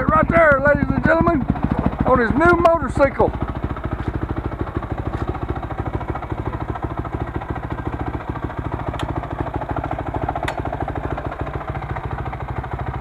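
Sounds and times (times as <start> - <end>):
motorbike engine idling: 0.0 - 13.0.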